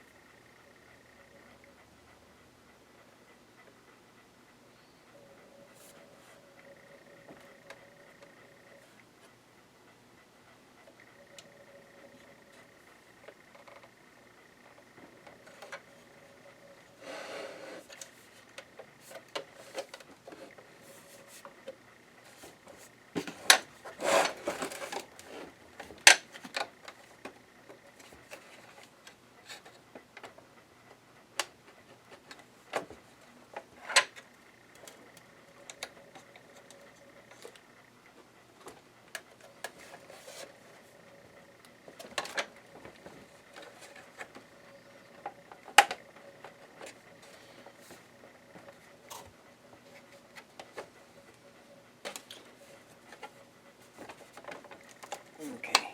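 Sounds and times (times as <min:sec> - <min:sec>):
scraping and rubbing: 0:23.9 - 0:25.5.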